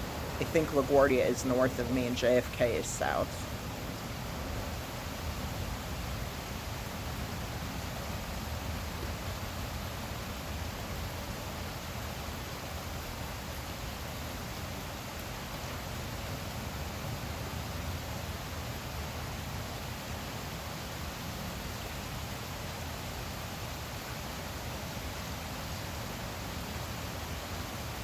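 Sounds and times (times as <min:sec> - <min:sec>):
heavy rain falling: 0:00.0 - 0:28.0.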